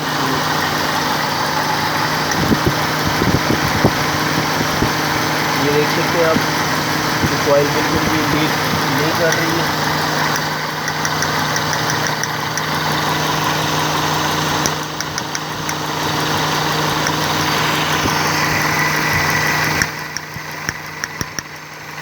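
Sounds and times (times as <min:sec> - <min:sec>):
car engine idling: 0:00.0 - 0:22.0
sharp clicks: 0:02.2 - 0:05.0, 0:07.2 - 0:13.4, 0:14.2 - 0:21.7.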